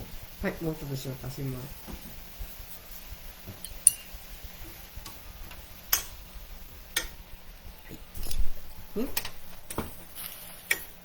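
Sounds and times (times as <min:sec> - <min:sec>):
kitchen utensils clinking: 0:03.6 - 0:04.2.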